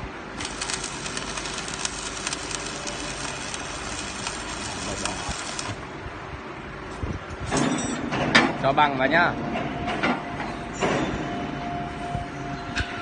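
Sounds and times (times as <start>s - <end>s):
welding arc crackling: 0.4s - 5.8s.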